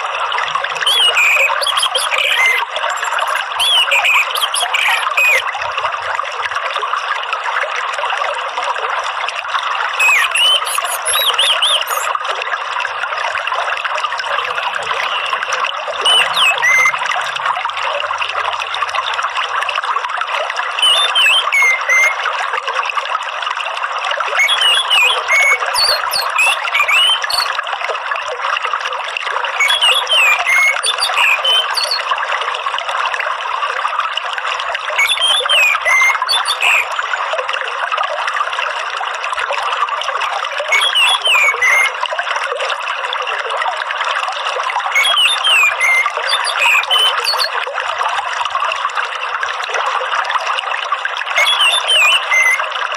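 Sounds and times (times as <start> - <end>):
trickling water: 0.0 - 52.9
thrush chirps: 0.8 - 5.4, 10.0 - 12.1, 16.0 - 16.9.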